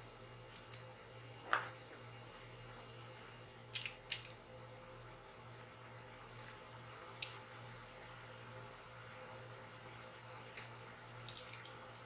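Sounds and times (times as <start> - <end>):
low steady hum: 0.0 - 12.0
wooden clamp parts clicking: 10.6 - 11.7.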